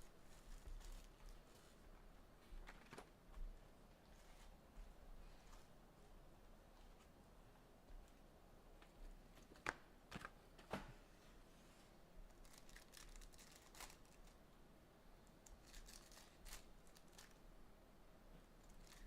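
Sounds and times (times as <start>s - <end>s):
wrapping crinkling and tearing: 12.3s - 14.4s, 15.4s - 17.4s, 18.6s - 19.0s.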